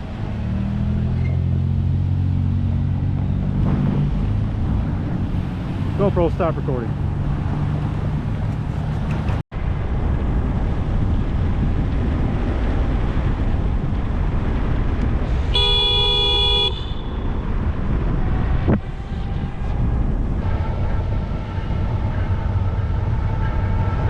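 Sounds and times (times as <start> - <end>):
wind and road noise: 0.0 - 24.0
car horn blast: 15.5 - 17.3.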